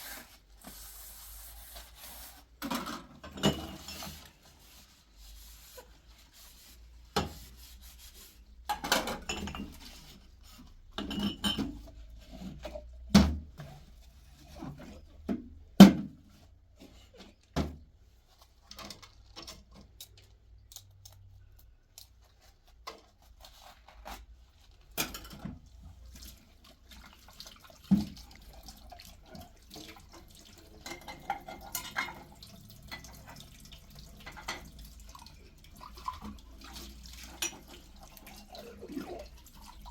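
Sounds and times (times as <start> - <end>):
dishes clinking: 11.0 - 11.8, 30.8 - 32.3
tap water running: 26.2 - 39.9.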